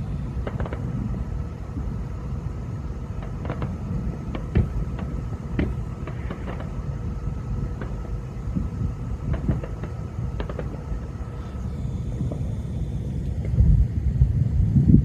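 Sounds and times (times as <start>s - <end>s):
distant fireworks rumble: 0.0s - 15.0s
firework cracks and pops: 0.2s - 1.3s, 3.1s - 7.0s, 7.6s - 11.5s.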